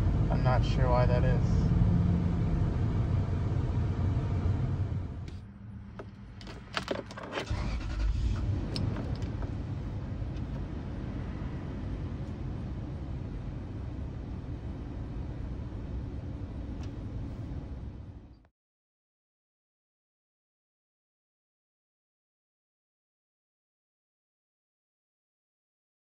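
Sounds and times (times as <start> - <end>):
car engine revving and idling: 0.0 - 18.2
sharp clicks and rattles: 6.0 - 8.0, 8.7 - 9.6.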